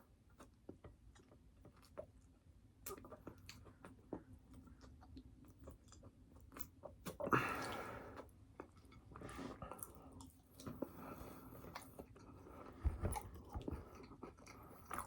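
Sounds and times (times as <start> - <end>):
chewing and biting food: 0.4 - 7.7.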